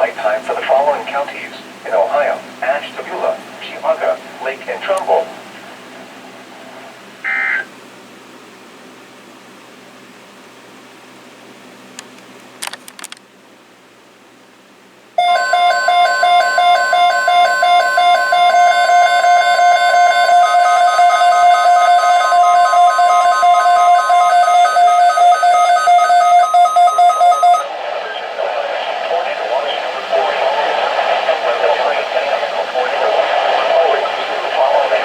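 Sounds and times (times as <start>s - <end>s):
constant high tone: 7.2s - 7.7s, 15.2s - 30.7s
pulsing electronic alarm tone: 7.2s - 7.7s, 15.2s - 27.6s.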